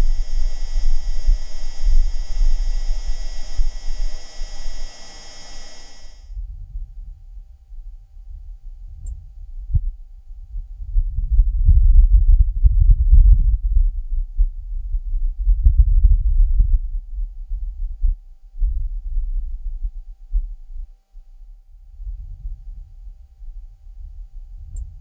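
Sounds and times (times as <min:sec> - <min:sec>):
faint steady tone: 0:00.0 - 0:06.3.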